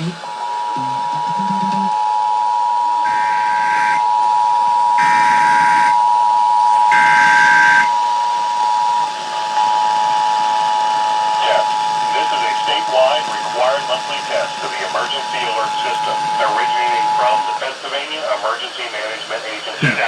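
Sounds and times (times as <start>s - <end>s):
person making announcement: 0.0s - 0.2s, 0.8s - 1.9s, 11.4s - 20.0s.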